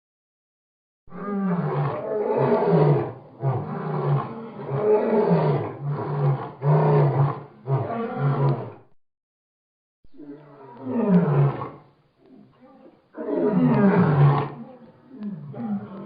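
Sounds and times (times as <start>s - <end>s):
lion roaring: 1.1s - 8.8s, 10.1s - 16.0s.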